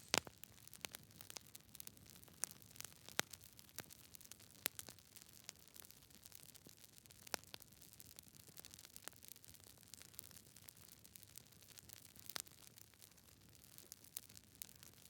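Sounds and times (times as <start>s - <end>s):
wood fire crackling: 0.0s - 8.8s.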